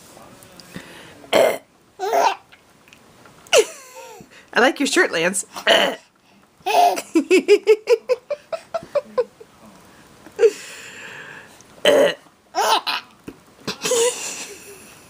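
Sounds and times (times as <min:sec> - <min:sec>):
baby making burp-like sounds: 0:01.3 - 0:02.4, 0:05.6 - 0:06.1, 0:11.8 - 0:12.2
baby giggling: 0:06.6 - 0:07.9, 0:12.6 - 0:13.1.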